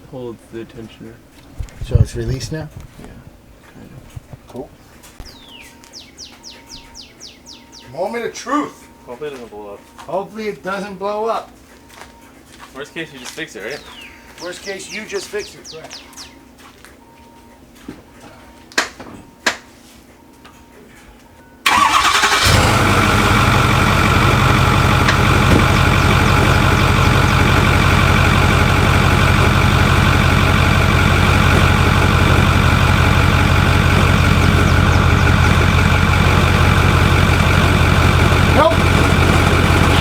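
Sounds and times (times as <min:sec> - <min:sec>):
diesel engine starting and idling: 0:21.6 - 0:40.0.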